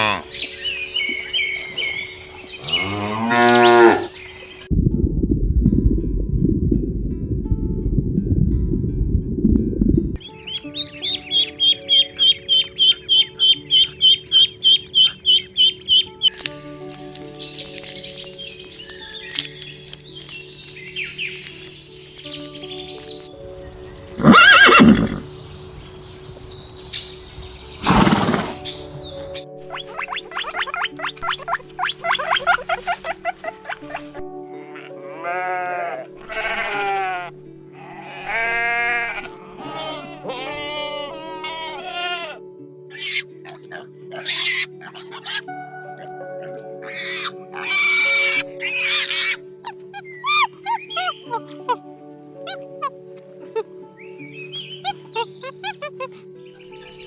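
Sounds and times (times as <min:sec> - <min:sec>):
cow mooing: 0:02.6 - 0:04.1
low rumbling noise: 0:04.7 - 0:10.2
bird chirps: 0:10.2 - 0:16.4
horse whinnying: 0:24.2 - 0:25.2, 0:27.8 - 0:28.6.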